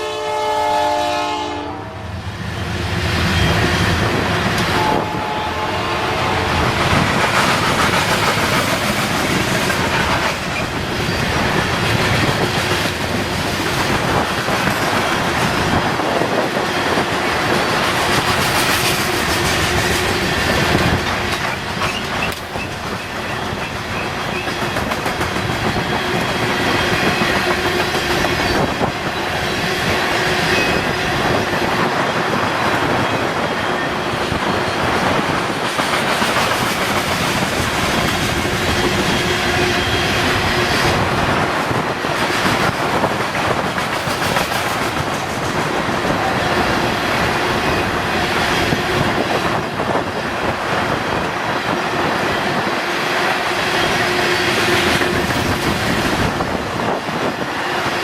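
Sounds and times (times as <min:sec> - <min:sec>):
train horn blast: 0:00.0 - 0:02.2, 0:04.6 - 0:06.8
train wheels clattering over rails: 0:06.3 - 0:58.0.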